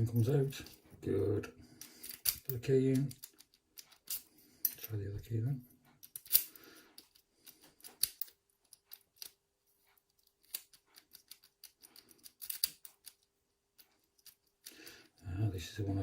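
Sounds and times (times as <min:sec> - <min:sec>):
key clicking in lock cylinder: 0:10.1 - 0:13.3.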